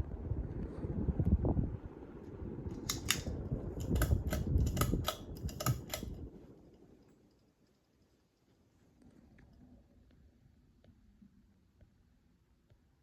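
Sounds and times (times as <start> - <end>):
sharp irregular clicks: 2.8 - 6.2.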